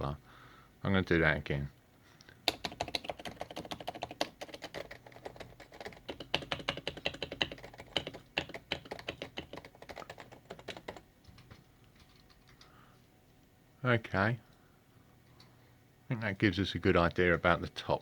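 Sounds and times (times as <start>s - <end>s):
keyboard key clacks: 2.5s - 12.3s.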